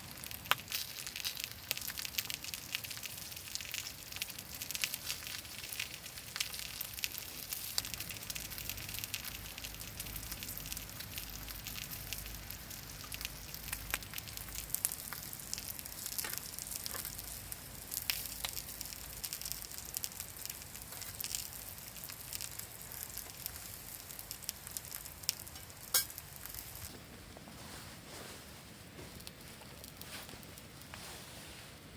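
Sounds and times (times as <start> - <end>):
meat sizzling in a pan: 0.0 - 26.9
campfire crackling: 0.0 - 31.1.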